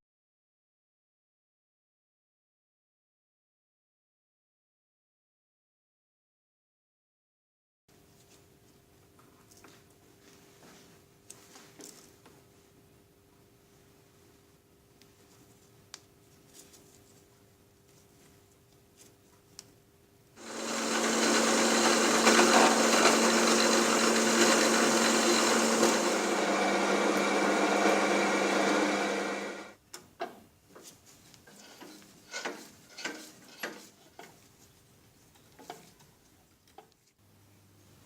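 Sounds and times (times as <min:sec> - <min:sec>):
power tool rasping: 0:20.4 - 0:29.7.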